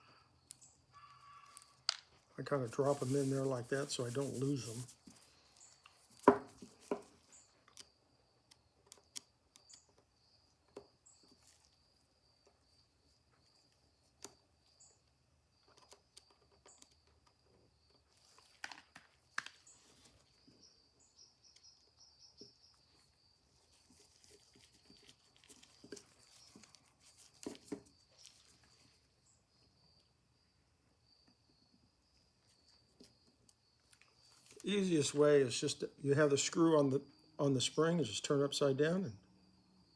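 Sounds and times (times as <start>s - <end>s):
small screws clicking and tapping: 6.8s - 11.7s, 15.5s - 19.6s.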